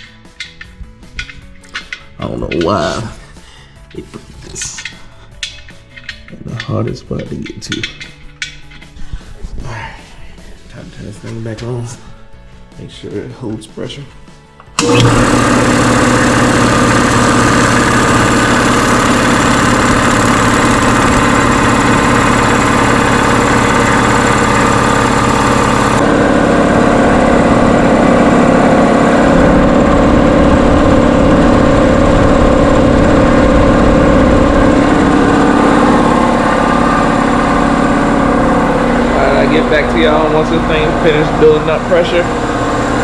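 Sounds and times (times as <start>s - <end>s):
electric air compressor running: 14.8s - 43.0s.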